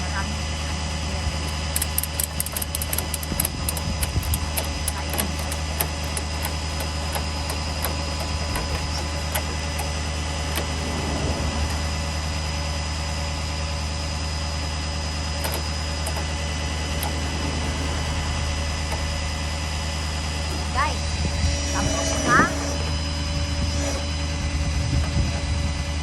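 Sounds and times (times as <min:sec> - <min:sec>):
vehicle engine idling: 0:00.0 - 0:26.0
faint clicks: 0:01.5 - 0:10.9.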